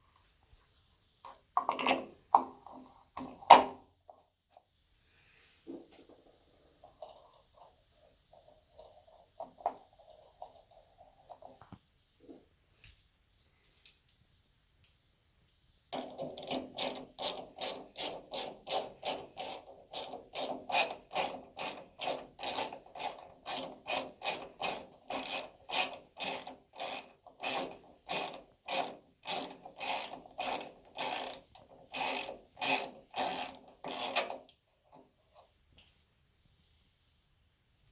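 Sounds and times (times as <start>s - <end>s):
hand ratchet clicking: 16.0s - 34.4s.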